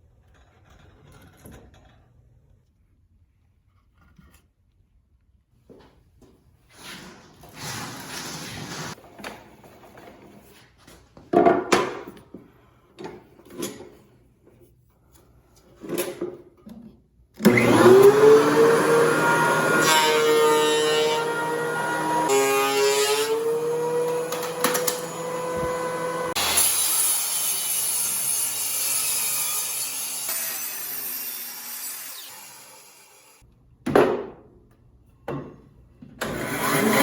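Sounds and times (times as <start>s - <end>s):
power tool motor whining: 17.5s - 26.8s.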